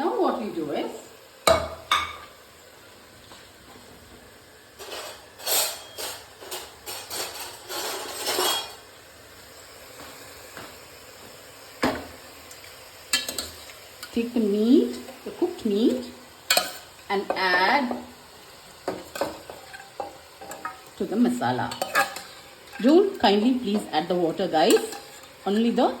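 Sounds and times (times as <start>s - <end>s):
clattering and scraping: 4.8s - 8.8s.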